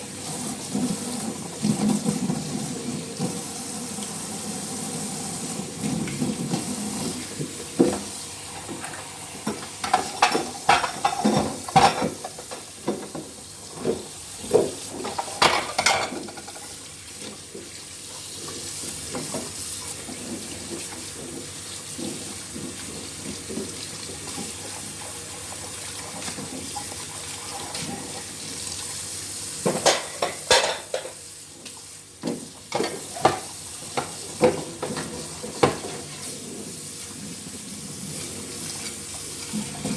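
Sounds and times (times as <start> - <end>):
tap water running into sink: 0.0 - 39.9
dishes and utensils clinking: 9.5 - 13.1, 15.0 - 16.8, 29.7 - 31.2.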